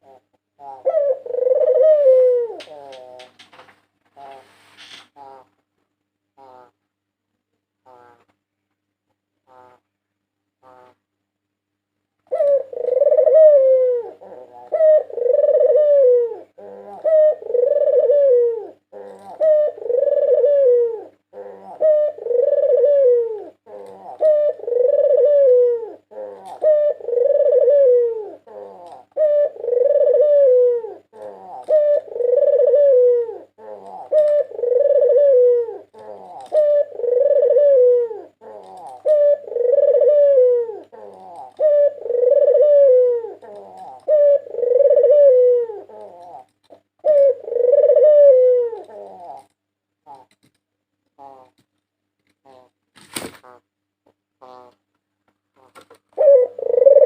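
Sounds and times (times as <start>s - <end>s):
dove cooing: 0.0s - 3.5s, 12.2s - 50.5s, 51.2s - 51.6s, 52.4s - 52.8s, 54.4s - 54.8s, 55.6s - 57.0s.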